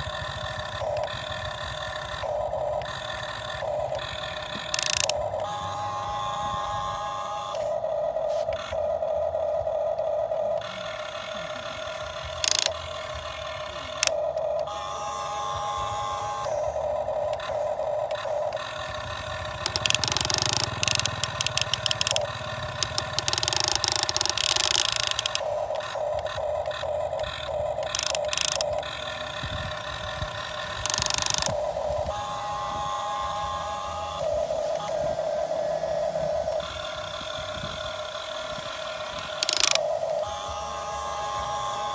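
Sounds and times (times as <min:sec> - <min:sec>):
electric motors whining: 0:00.0 - 0:41.9
rapid rattling: 0:18.2 - 0:26.0, 0:27.8 - 0:29.8, 0:37.6 - 0:40.1.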